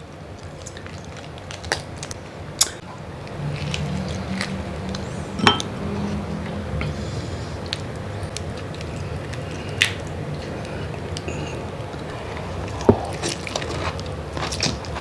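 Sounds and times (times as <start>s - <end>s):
wet squishing of seafood: 7.6s - 15.0s.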